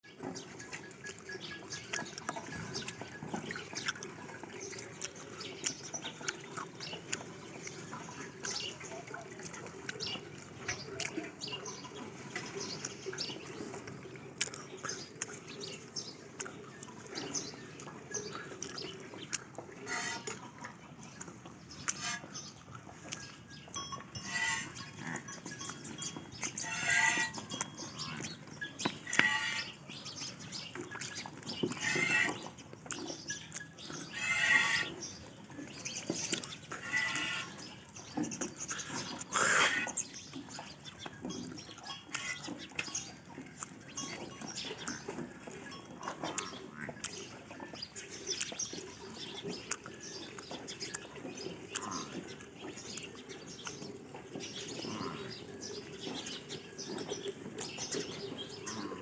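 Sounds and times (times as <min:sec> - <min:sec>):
animal calls: 0:16.4 - 0:20.8, 0:24.2 - 0:45.2.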